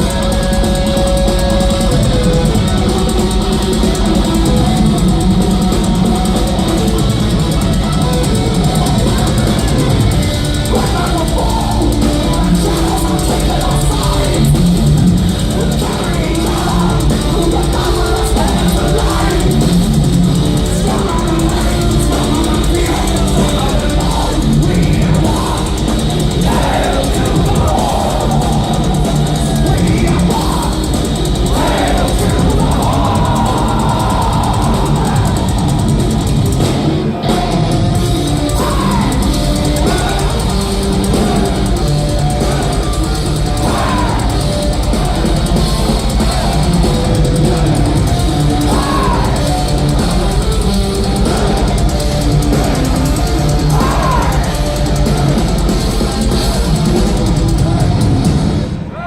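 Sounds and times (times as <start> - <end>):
thrash metal band playing live: 0.0 - 59.0.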